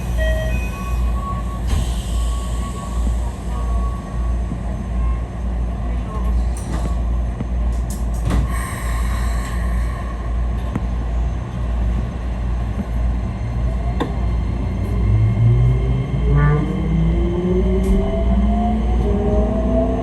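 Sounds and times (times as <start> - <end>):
train running rumble: 0.0 - 20.0
loud low drone stepping upward: 13.9 - 20.0.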